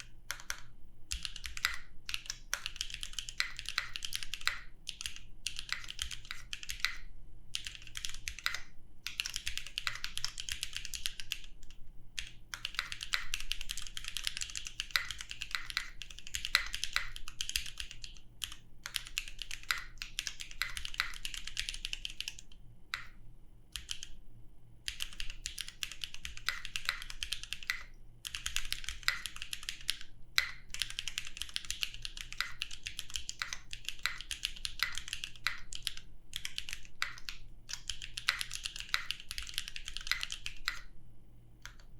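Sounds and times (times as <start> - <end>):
mechanical keyboard typing: 0.0 - 24.2, 24.9 - 40.9, 41.6 - 41.9.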